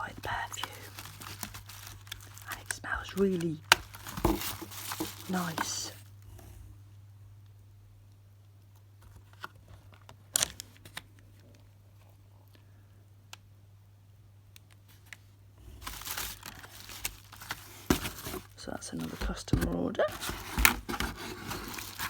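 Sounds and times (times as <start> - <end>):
packaging crinkling and rustling: 0.0 - 6.1, 9.1 - 12.6, 14.8 - 22.0
low steady hum: 0.0 - 22.0.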